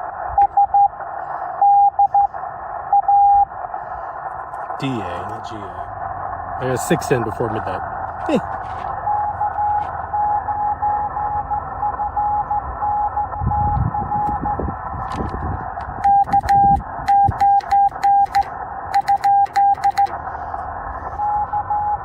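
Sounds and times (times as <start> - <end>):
weak morse code tone: 0.3 - 1.0, 1.6 - 3.5, 6.6 - 14.8, 16.0 - 20.2, 21.0 - 22.0
loud morse code sidetone: 1.6 - 3.5, 9.0 - 14.7, 16.0 - 20.2, 21.0 - 22.0
radio band hiss: 2.2 - 10.1, 20.0 - 21.6
morse key clicks: 16.2 - 20.2.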